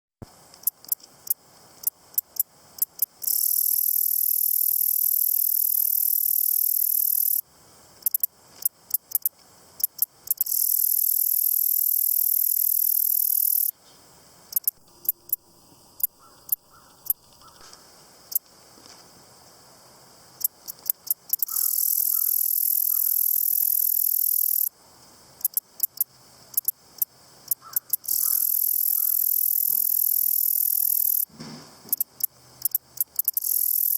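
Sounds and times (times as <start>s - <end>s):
grasshopper stridulating: 0.2s - 33.9s.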